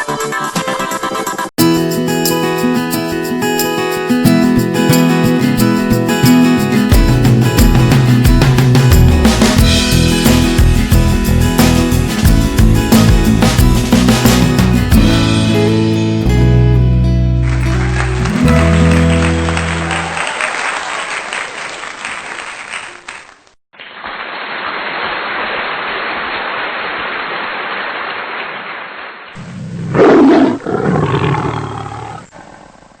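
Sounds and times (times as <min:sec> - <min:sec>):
held musical chord: 0:15.3 - 0:20.2
crowd applause and cheering: 0:17.4 - 0:23.3.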